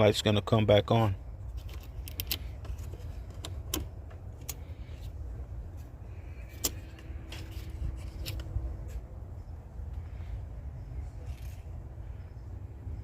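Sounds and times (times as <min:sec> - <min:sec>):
steady low rumble: 0:01.1 - 0:13.0
plastic and metal parts clicking: 0:01.6 - 0:04.7.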